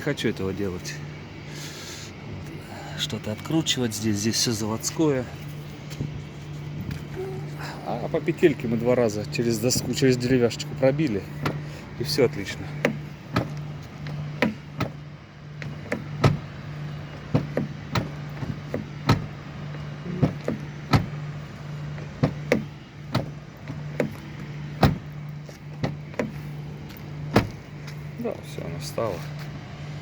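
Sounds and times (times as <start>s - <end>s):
car door knocks and clicks: 11.3s - 11.7s, 12.7s - 27.7s.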